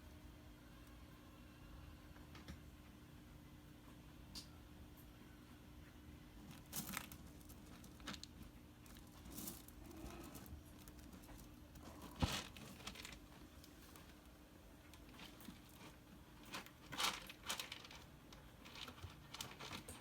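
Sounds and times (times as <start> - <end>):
kitten scratching in cat litter: 6.4 - 20.0.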